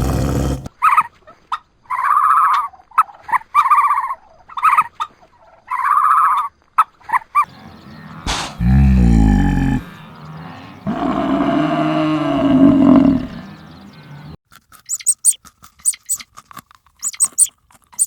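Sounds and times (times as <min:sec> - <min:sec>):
animal calling: 0:00.0 - 0:00.7, 0:07.4 - 0:16.2, 0:17.0 - 0:18.0.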